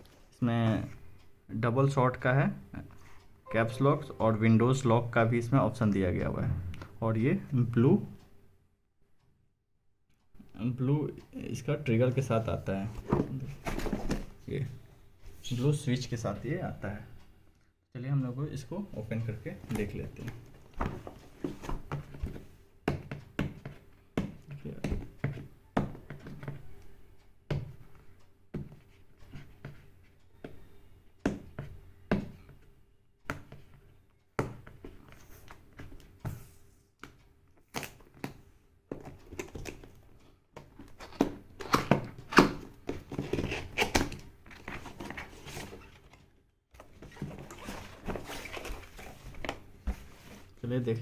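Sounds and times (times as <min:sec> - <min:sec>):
cardboard scraping and rustling: 0:43.0 - 0:46.1, 0:46.9 - 0:50.6.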